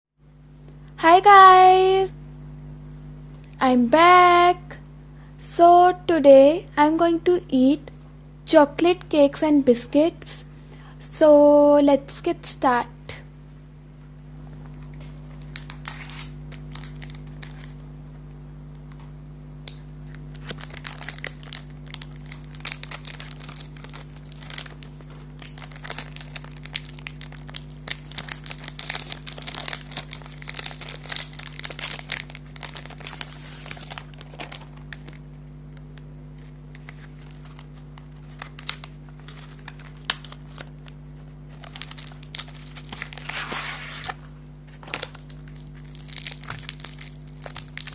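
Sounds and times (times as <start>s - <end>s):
steady low hum: 0.2s - 47.9s
snack packaging crinkling and tearing: 15.0s - 18.4s, 20.0s - 35.4s, 36.3s - 47.9s.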